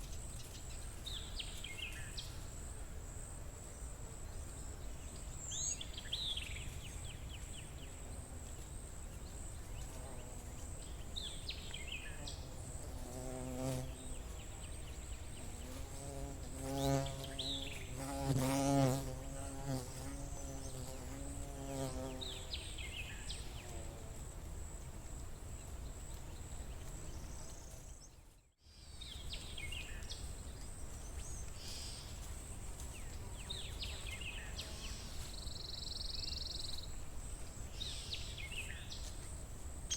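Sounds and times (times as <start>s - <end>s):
flying insect buzzing: 12.1s - 22.9s.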